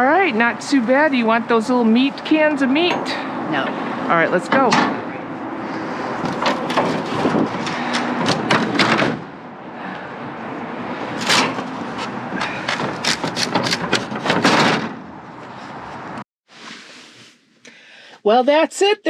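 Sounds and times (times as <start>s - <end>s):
objects knocking and clattering: 6.2s - 9.2s.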